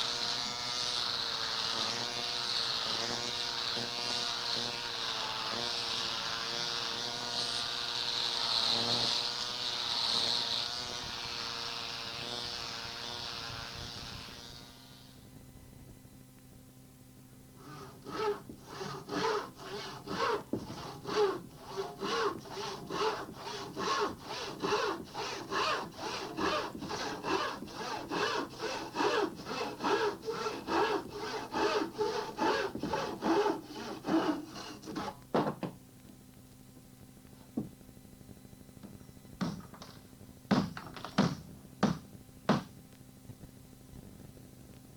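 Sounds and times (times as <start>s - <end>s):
hand saw cutting wood: 0.0s - 15.0s, 17.6s - 35.7s, 39.4s - 39.9s, 40.5s - 42.7s.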